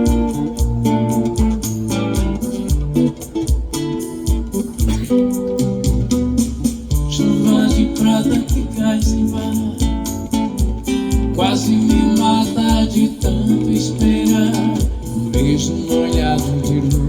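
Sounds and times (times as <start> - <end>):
bass: 0.0 - 17.0
guitar over steady beat: 0.0 - 17.0.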